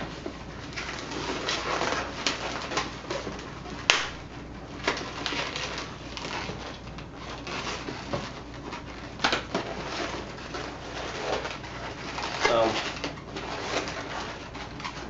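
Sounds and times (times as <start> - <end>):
balloons rubbing and squeaking: 9.7 - 15.0.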